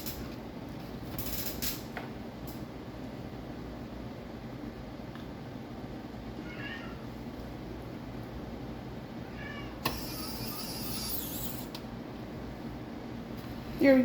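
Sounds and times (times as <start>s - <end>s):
cat meowing: 6.4s - 7.1s, 9.3s - 11.7s.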